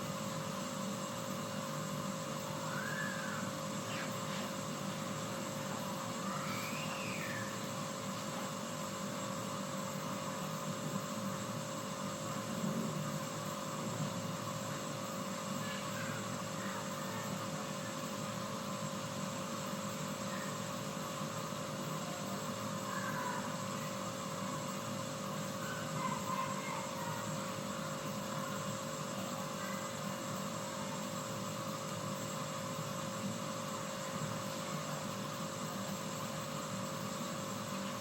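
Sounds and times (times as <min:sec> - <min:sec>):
constant hum: 0:00.0 - 0:38.0
water heating with rushing hiss: 0:00.0 - 0:38.0
faint high chirps: 0:02.6 - 0:04.4, 0:06.2 - 0:07.6.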